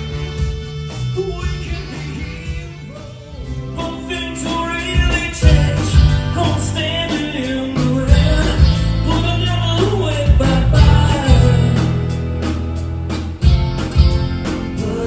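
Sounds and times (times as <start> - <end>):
live rock band playing: 0.0 - 15.0
person singing: 1.2 - 12.2, 14.6 - 15.0.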